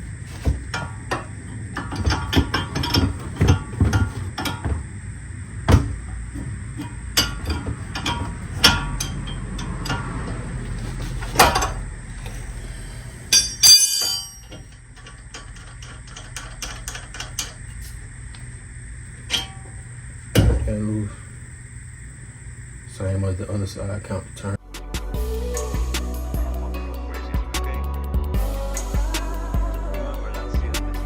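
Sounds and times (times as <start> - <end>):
bright metallic clatter: 13.3 - 18.0.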